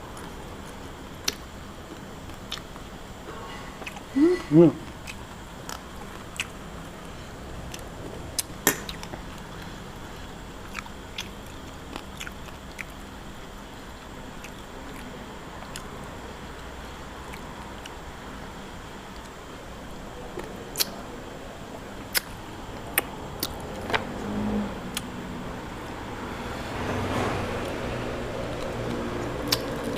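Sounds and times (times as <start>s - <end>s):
chewing clicks and crunches: 2.2s - 2.8s, 4.9s - 6.6s, 7.7s - 13.1s, 14.4s - 18.0s, 22.1s - 24.0s, 28.5s - 29.9s
person humming: 4.1s - 4.9s.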